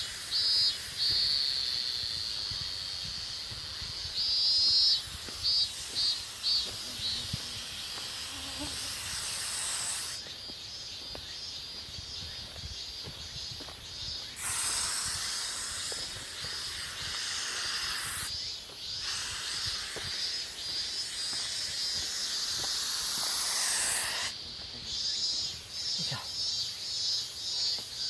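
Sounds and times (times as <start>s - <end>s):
aerosol spray hissing: 0.0s - 10.2s, 14.2s - 24.4s.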